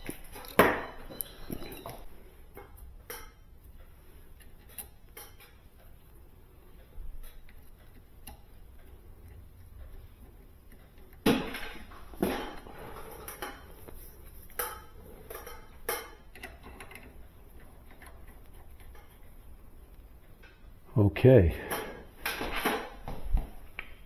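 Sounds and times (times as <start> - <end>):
metallic clinks and knocks: 0.0 - 3.5.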